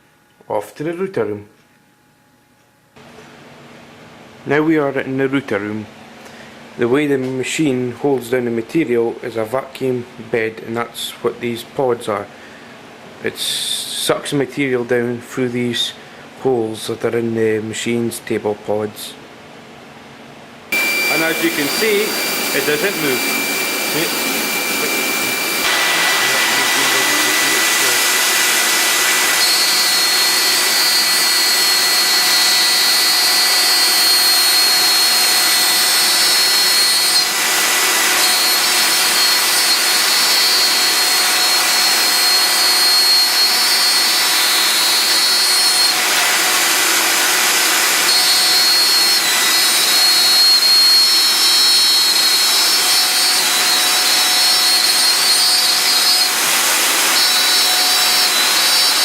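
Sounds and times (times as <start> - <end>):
router spindle whine: 20.7 - 59.0
vacuum pump hissing: 20.7 - 59.0.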